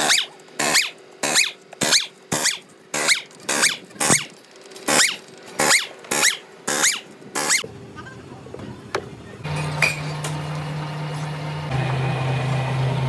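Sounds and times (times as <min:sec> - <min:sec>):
rising squeak: 0:00.0 - 0:04.3, 0:04.9 - 0:07.6.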